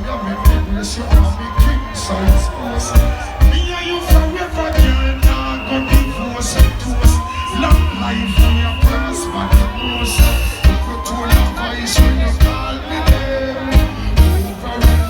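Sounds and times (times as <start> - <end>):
heavy bass line: 0.0 - 15.0
live reggae band playing: 0.0 - 15.0.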